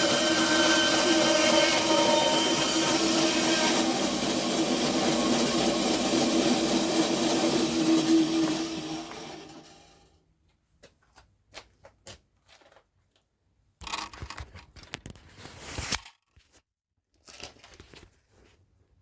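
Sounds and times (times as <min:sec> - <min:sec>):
power tool motor winding down: 0:00.0 - 0:10.0.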